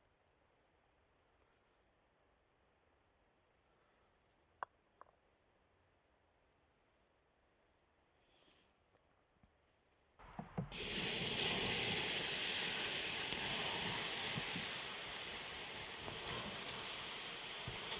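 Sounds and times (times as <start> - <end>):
food sizzling over hot coals: 10.3 - 17.9.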